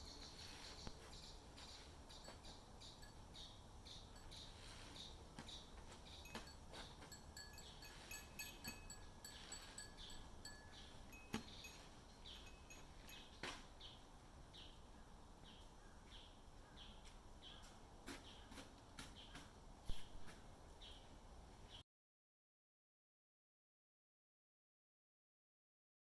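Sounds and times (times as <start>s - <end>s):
bird chirping: 0.0s - 21.1s
wind chimes ringing: 6.1s - 13.5s.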